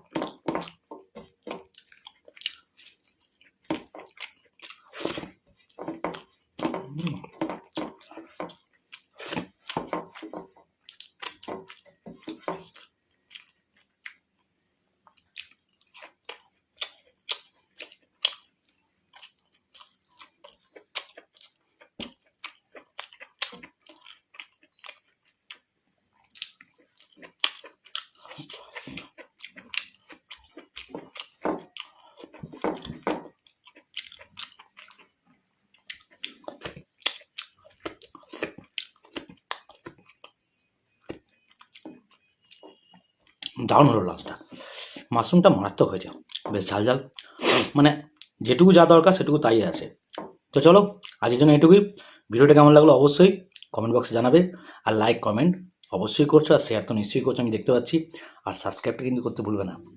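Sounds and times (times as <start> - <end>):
chewing and wet mouth smacks: 0.2 - 10.2, 10.8 - 14.5, 15.1 - 43.6, 46.1 - 47.4, 49.8 - 51.2.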